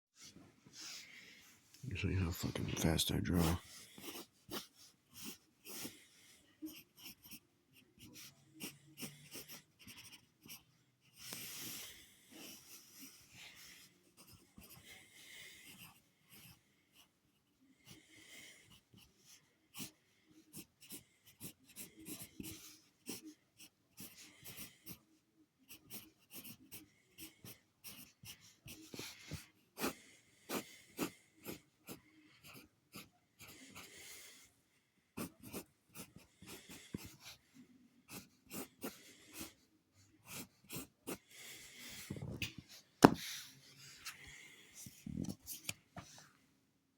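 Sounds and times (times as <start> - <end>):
pencil drawing strokes on paper: 0.2 - 34.4, 35.2 - 46.4.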